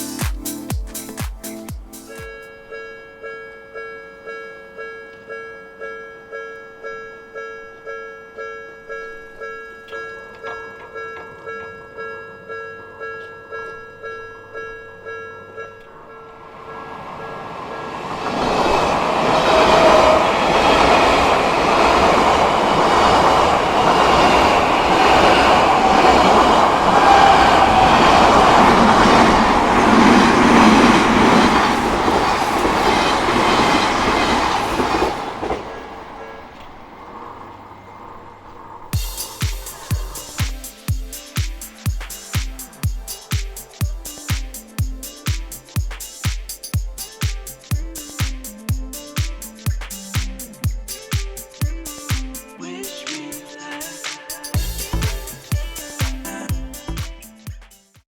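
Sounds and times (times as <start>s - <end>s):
electric train passing: 0.0s - 10.4s, 11.0s - 57.0s
level-crossing warning bell: 2.2s - 35.6s.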